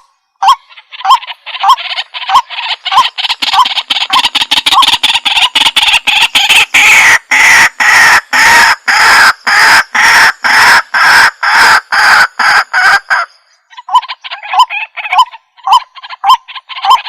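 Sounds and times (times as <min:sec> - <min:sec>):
bird calling harsh notes: 0:00.0 - 0:17.0.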